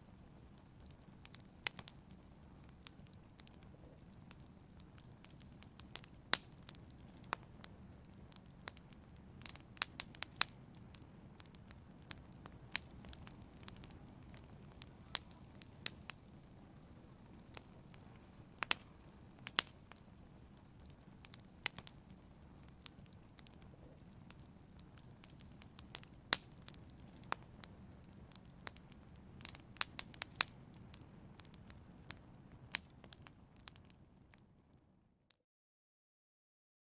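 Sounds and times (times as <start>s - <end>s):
wood fire crackling and popping: 0.0s - 34.8s
low rumble of flames: 0.0s - 35.0s.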